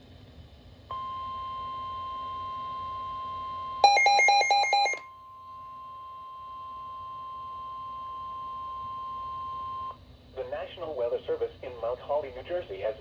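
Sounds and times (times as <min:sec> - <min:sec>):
steady warning alarm tone: 0:00.9 - 0:05.0
rapid electronic beeping: 0:03.9 - 0:05.0.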